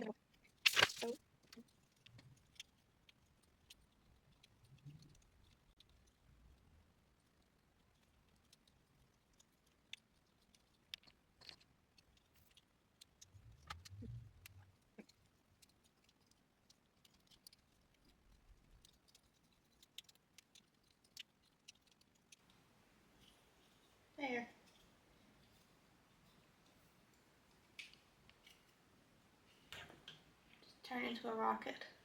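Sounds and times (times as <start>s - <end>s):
plastic toy clicks and handling: 0.3s - 6.2s, 8.0s - 22.5s.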